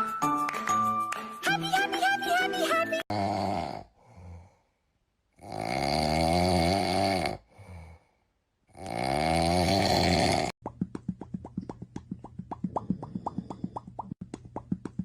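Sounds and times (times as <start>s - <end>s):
raspy snoring: 3.1s - 4.6s, 5.4s - 8.1s, 8.7s - 10.6s.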